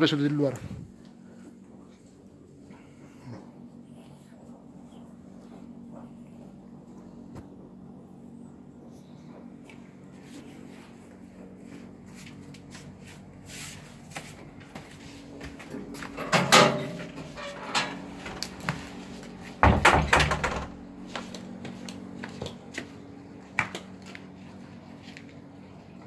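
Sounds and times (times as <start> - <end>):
steady low hum: 0.0 - 26.0
knocks and thumps: 19.6 - 20.8.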